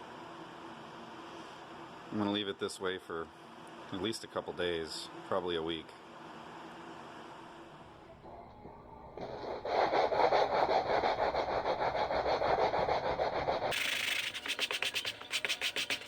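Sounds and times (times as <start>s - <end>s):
sandpaper rubbing on hide: 9.2s - 16.0s.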